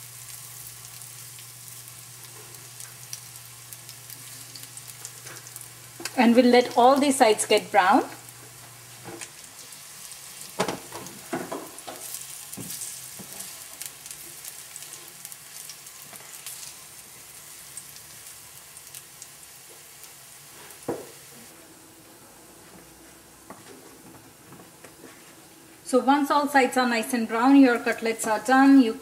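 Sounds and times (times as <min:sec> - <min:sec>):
cutlets sizzling in oil: 0:00.0 - 0:21.5.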